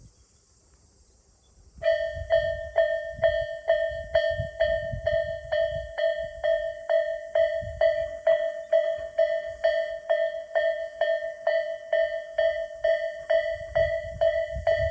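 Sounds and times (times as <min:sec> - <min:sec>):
level crossing warning bell: 0:01.8 - 0:14.9.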